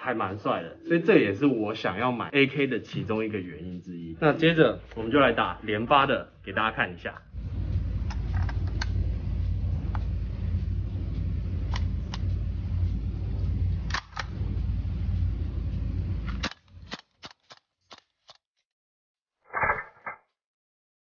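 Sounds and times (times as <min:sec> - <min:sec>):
low rumble: 0:04.2 - 0:16.9.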